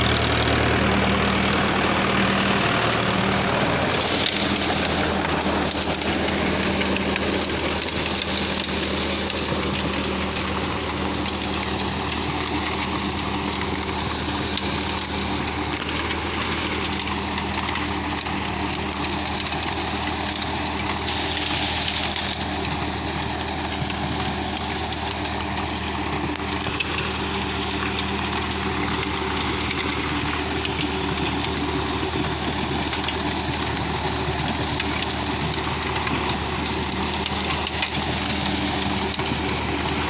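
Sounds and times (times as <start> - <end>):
engine idling hum: 0.0 - 40.0
heavy rain falling: 0.0 - 40.0.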